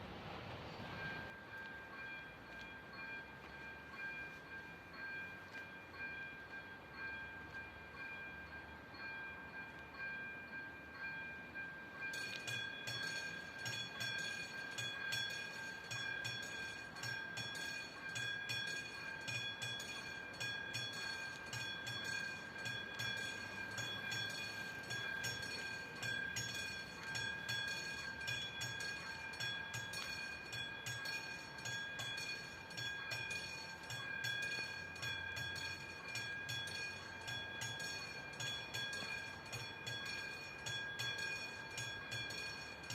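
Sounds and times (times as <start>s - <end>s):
train wheels clicking on rails: 0.0s - 42.9s
electronic crossing warning bell: 0.9s - 42.9s.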